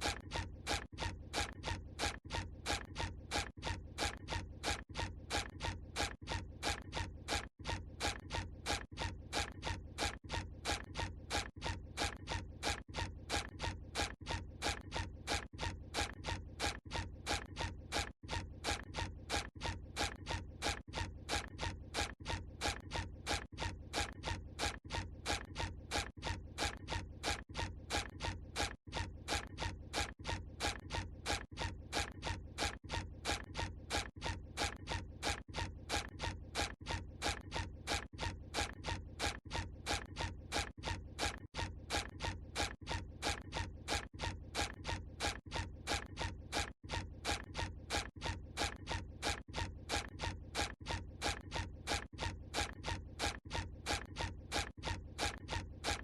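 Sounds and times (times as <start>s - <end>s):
cartoon footstep sounds: 29.4s - 56.0s.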